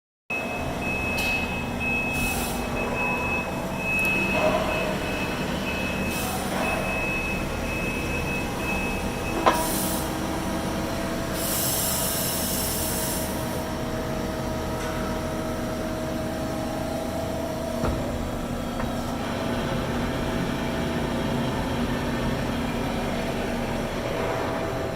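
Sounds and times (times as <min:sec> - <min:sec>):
machinery hum: 0:00.4 - 0:24.9.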